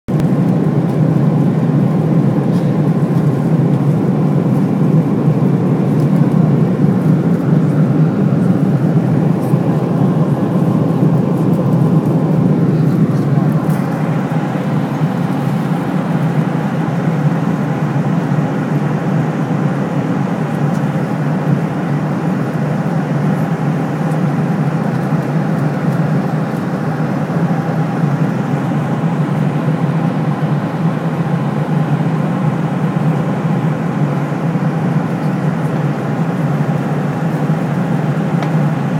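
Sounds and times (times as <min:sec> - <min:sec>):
airplane cabin engine rumble: 0:00.1 - 0:38.9
faint steady hums: 0:00.1 - 0:38.9.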